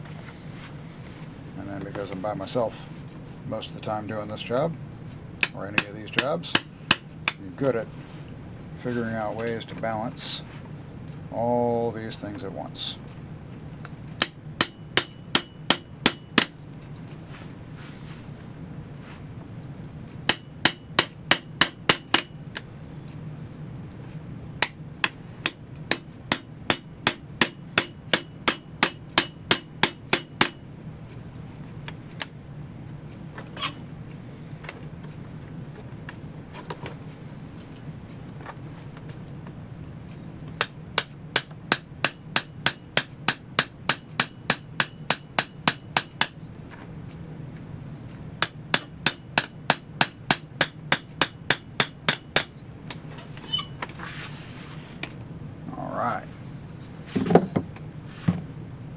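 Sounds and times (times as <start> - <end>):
hammer tapping on metal: 5.4 - 7.4, 14.2 - 16.6, 20.3 - 22.7, 24.6 - 30.6, 40.6 - 46.4, 48.4 - 52.6.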